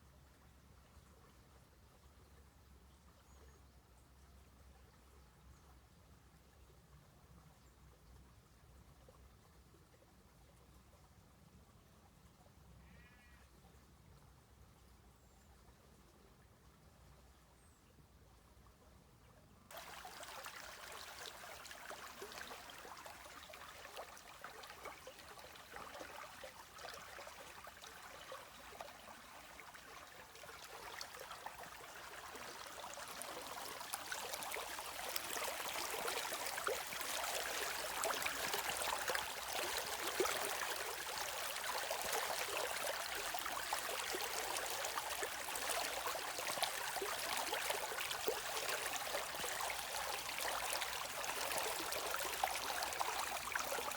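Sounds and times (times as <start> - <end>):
stream water rushing and babbling: 19.7 - 53.9.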